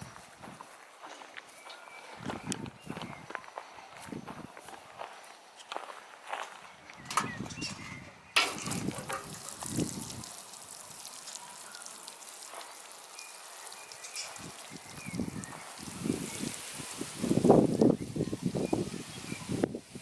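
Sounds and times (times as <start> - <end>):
running water hissing: 8.4 - 20.0.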